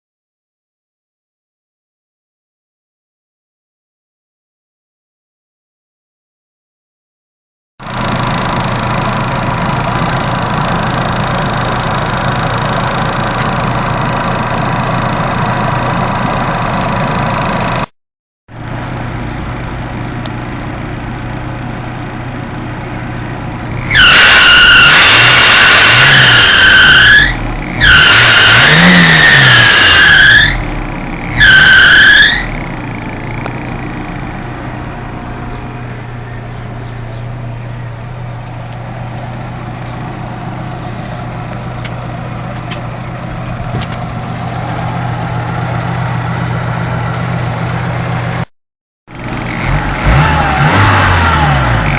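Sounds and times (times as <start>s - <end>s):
car engine running: 7.8s - 17.9s, 18.5s - 48.5s, 49.1s - 51.9s
fan belt screeching: 7.8s - 17.9s, 23.6s - 34.5s.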